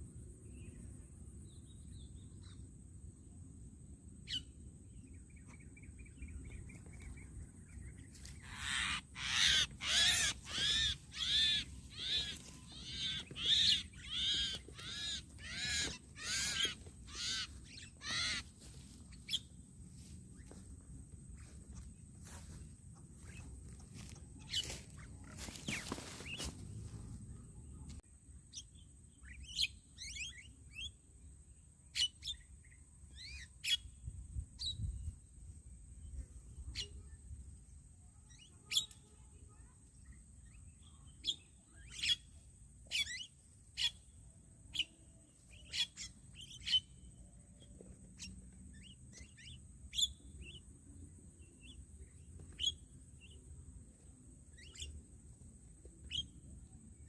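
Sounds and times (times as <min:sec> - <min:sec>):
birds chirping: 0:04.3 - 0:27.4.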